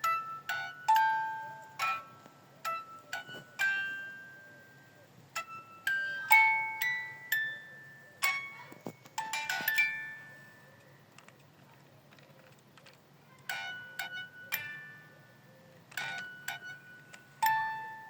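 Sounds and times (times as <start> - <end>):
bright chime-like musical notes: 0.0 - 10.8.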